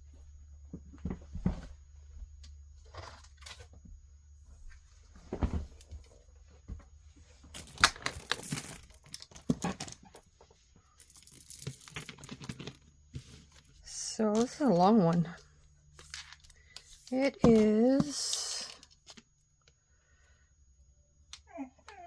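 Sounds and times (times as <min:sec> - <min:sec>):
rustling and crinkling on tabletop: 0:04.4 - 0:19.3.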